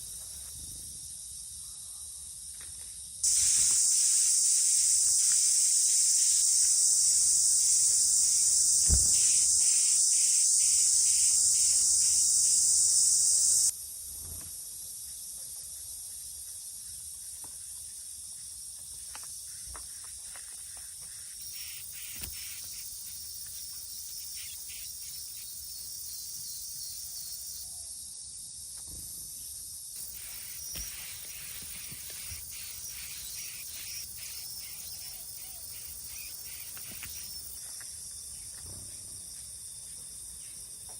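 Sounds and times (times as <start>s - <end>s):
high-pitched insect drone: 3.2s - 13.7s, 21.4s - 27.8s, 30.0s - 38.4s.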